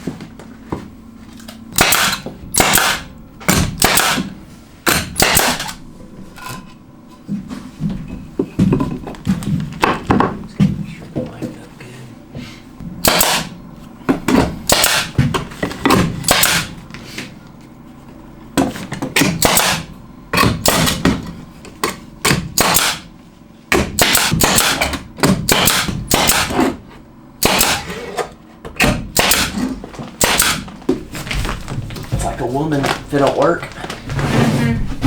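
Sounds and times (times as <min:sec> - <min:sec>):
nails hammered into wood: 0:01.8 - 0:05.7, 0:13.0 - 0:13.5, 0:14.3 - 0:15.2, 0:15.9 - 0:16.7, 0:19.2 - 0:21.2, 0:22.3 - 0:23.0, 0:23.7 - 0:26.7, 0:27.4 - 0:27.9, 0:28.8 - 0:29.6, 0:30.2 - 0:30.7.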